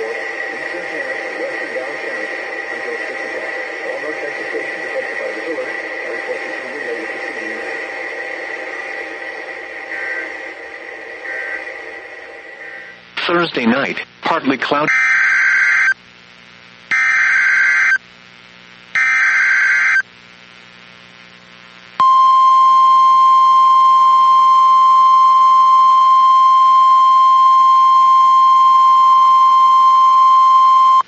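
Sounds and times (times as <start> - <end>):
steady warning alarm tone: 0.0 - 13.0, 14.9 - 16.0, 16.9 - 18.0, 19.0 - 20.0, 22.0 - 31.0.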